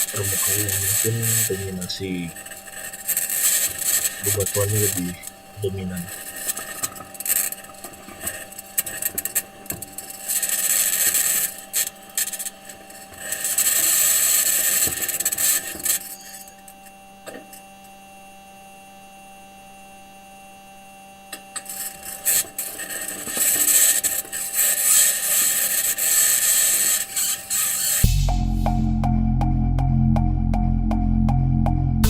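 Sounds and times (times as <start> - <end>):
faint scratches: 0.0 - 16.4, 21.7 - 28.0
electronic hum tones: 0.0 - 32.0.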